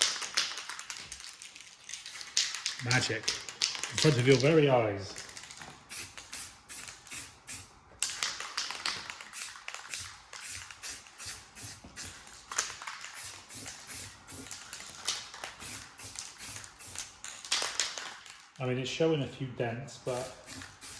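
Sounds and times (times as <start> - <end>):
spray paint can hissing: 5.3 - 18.2, 20.1 - 20.9.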